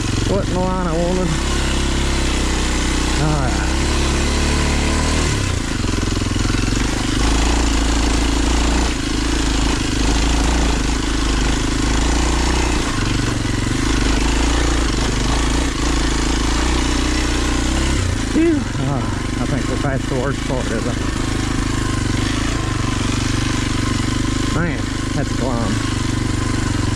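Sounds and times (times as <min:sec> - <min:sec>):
motorcycle engine revving: 0:00.0 - 0:26.9.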